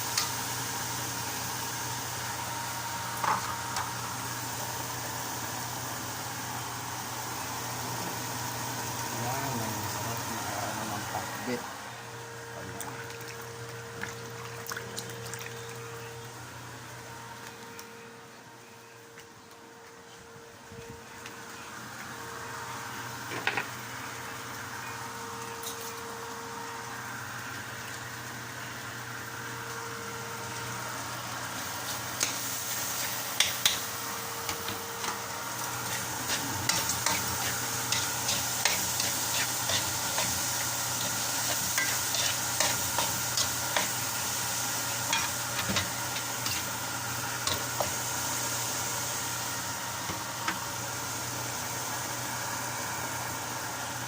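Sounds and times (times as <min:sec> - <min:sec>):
food sizzling in a pan: 0:00.0 - 0:11.7, 0:23.0 - 0:54.0
utensil scraping a pan: 0:35.8 - 0:40.4, 0:41.0 - 0:43.9.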